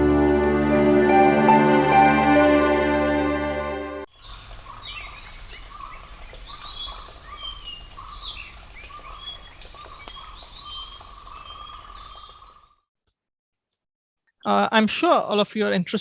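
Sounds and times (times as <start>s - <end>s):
birds chirping and singing: 4.2s - 12.7s.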